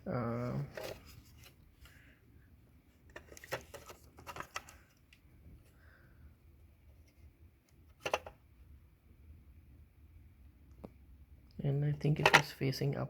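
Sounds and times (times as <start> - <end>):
plastic parts rubbing and clicking: 7.9 - 8.4.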